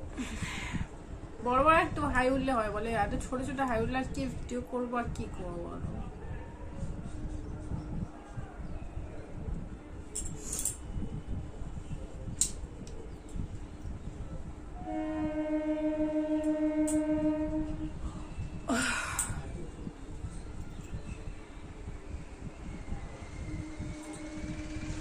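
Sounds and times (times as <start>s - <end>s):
breathy rush of noise: 14.7s - 20.2s, 21.6s - 25.0s
horn blast: 14.8s - 18.6s, 23.4s - 25.0s.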